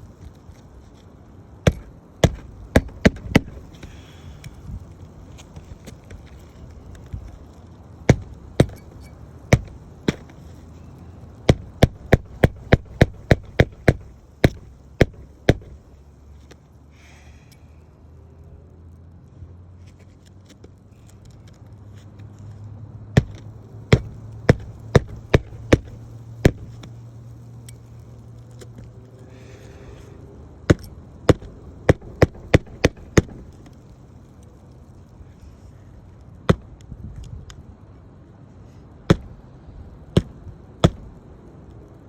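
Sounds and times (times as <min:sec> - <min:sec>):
low steady hum: 0:00.0 - 0:19.4, 0:22.9 - 0:42.0
nails hammered into shingles: 0:01.6 - 0:04.2, 0:08.1 - 0:10.6, 0:11.4 - 0:16.0, 0:23.2 - 0:27.0, 0:30.7 - 0:33.7, 0:36.5 - 0:36.8, 0:39.1 - 0:39.4, 0:40.1 - 0:41.2.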